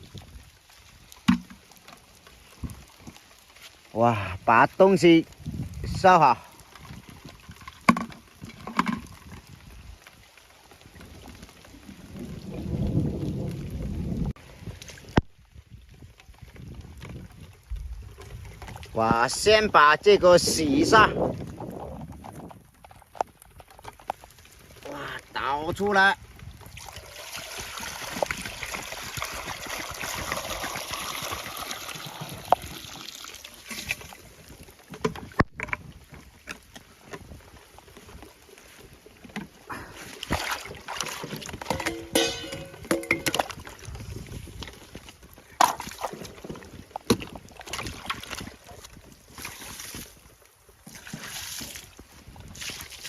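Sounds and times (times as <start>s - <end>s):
water pouring and splashing: 0.0s - 53.0s
water sloshing: 26.3s - 53.0s
cooking gear clattering: 41.6s - 43.4s.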